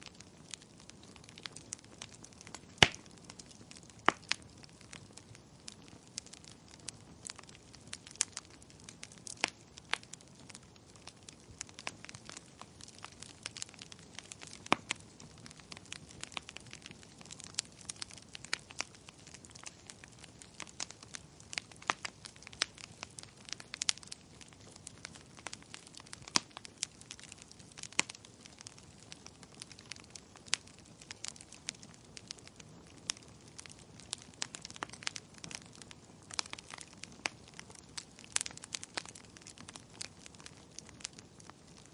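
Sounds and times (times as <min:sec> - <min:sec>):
wood fire crackling and popping: 0:00.0 - 0:41.9.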